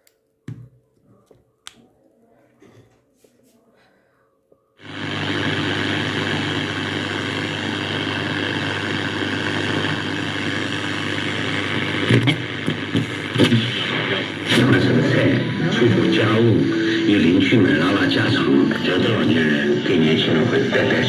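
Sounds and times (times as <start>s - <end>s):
radio static hiss: 4.8s - 21.0s
radio tuning crackles: 4.8s - 21.0s.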